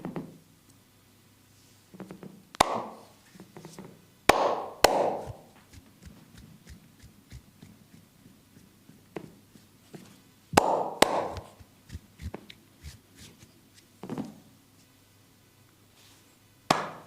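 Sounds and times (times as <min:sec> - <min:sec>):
hands rubbing skin: 0:03.2 - 0:03.8, 0:04.9 - 0:14.0
hands slapping body: 0:04.3 - 0:07.4, 0:10.6 - 0:12.5.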